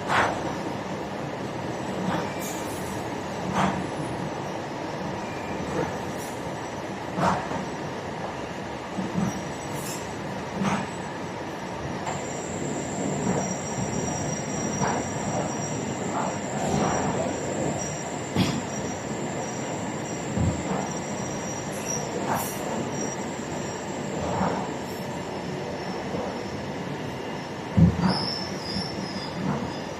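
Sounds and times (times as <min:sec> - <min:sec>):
machinery din with high whine: 0:12.0 - 0:26.6, 0:27.3 - 0:29.9.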